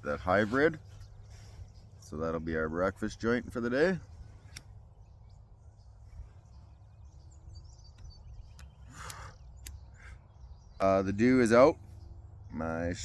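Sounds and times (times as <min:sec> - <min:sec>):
faint birds chirping: 0:00.0 - 0:13.0
light clicks: 0:04.4 - 0:04.8, 0:07.9 - 0:09.9.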